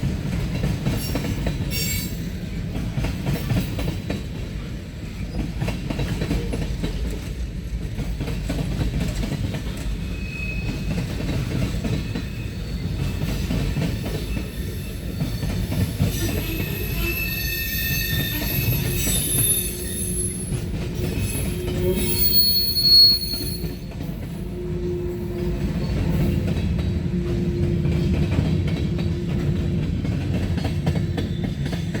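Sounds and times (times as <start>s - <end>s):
train wheels squealing: 0.9s - 2.5s, 9.7s - 26.6s, 30.6s - 32.0s.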